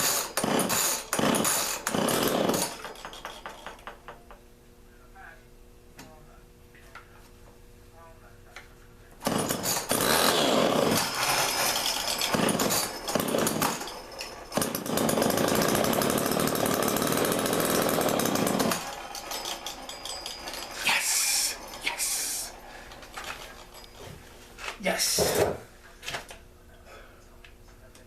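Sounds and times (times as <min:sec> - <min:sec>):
chainsaw engine running: 0:00.4 - 0:02.8, 0:09.2 - 0:23.8.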